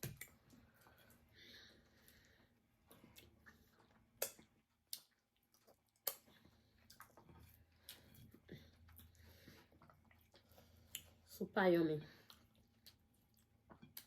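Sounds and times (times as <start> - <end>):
chewing and wet mouth smacks: 2.9 - 11.3, 12.2 - 14.0.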